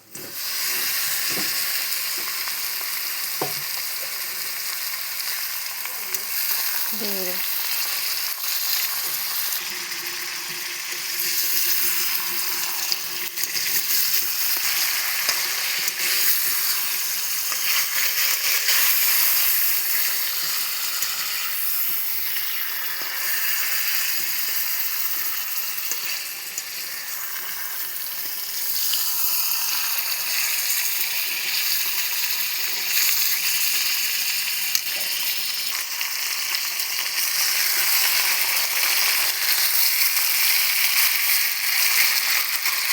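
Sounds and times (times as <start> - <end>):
chicken sizzling in hot oil: 0.0 - 42.9.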